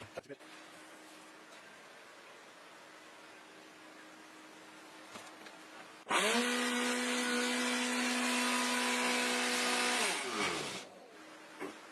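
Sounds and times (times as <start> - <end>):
vacuum cleaner motor whine: 6.1 - 11.9.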